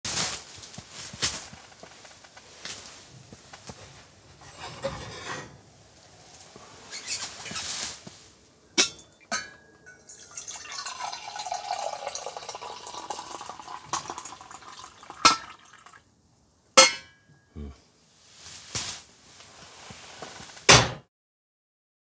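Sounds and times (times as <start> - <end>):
cups clinking: 8.8 - 16.0
liquid pouring: 9.9 - 16.0.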